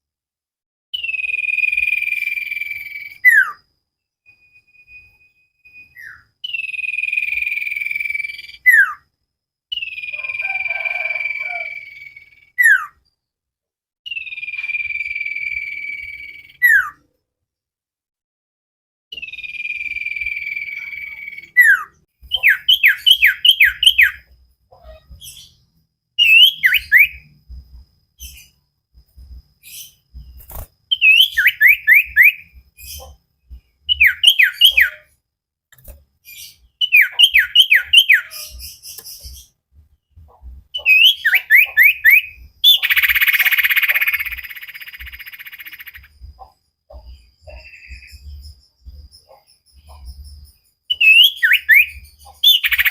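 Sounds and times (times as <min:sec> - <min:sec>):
bird whistling song: 0:01.0 - 0:03.7, 0:04.3 - 0:09.1, 0:09.7 - 0:13.1, 0:14.1 - 0:17.1, 0:19.1 - 0:27.4, 0:29.6 - 0:35.2, 0:36.2 - 0:39.6, 0:40.7 - 0:52.9
long held bird whistle: 0:01.0 - 0:09.1, 0:09.7 - 0:13.1, 0:14.1 - 0:17.1, 0:19.1 - 0:24.3, 0:26.2 - 0:27.4, 0:30.9 - 0:33.0, 0:33.9 - 0:35.2, 0:36.3 - 0:38.8, 0:40.8 - 0:46.1, 0:49.3 - 0:52.9
harsh raspy bird call: 0:09.9 - 0:13.0, 0:40.8 - 0:46.6.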